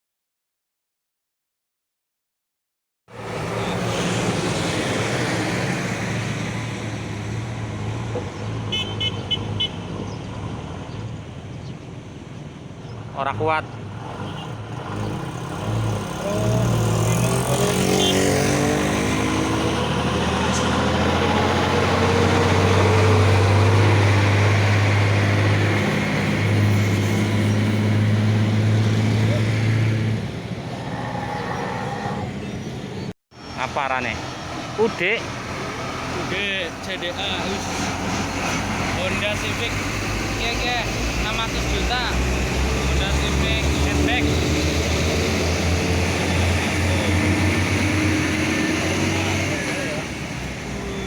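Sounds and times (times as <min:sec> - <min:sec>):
tyre and road noise: 0:03.1 - 0:51.0
vehicle horn short toots: 0:08.7 - 0:09.8, 0:17.9 - 0:18.3
truck diesel engine drone: 0:13.9 - 0:31.4, 0:32.1 - 0:51.0.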